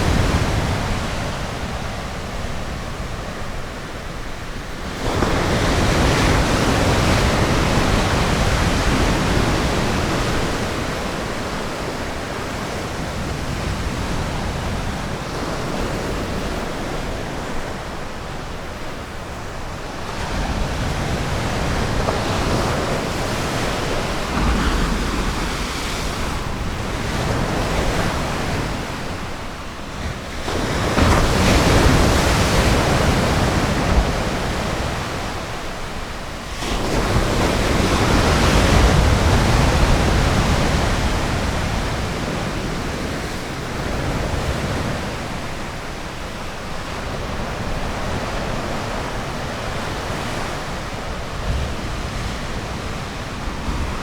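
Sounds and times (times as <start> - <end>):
waves breaking on a beach: 0.0 - 54.0
wind noise on microphone: 0.0 - 54.0.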